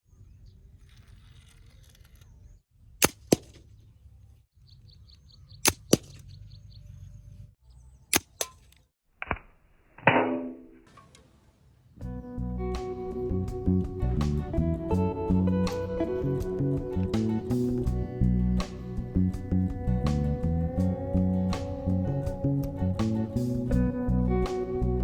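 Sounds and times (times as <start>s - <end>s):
birds chirping faintly: 3.6s - 8.7s
slingshot snaps: 5.6s - 6.2s, 8.1s - 9.5s
guitar music: 12.0s - 25.0s.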